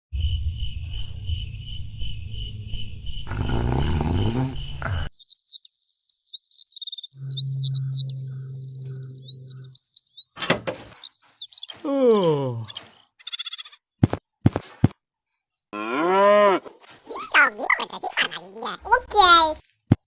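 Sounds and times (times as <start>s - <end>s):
crickets chirping: 0.2s - 10.3s
birds chirping: 1.0s - 13.8s.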